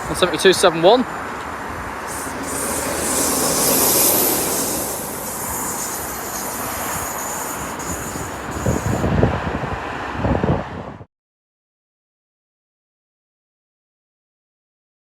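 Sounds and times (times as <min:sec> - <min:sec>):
train wheels on rail: 0:00.0 - 0:09.2
faint high whistle: 0:02.0 - 0:09.1.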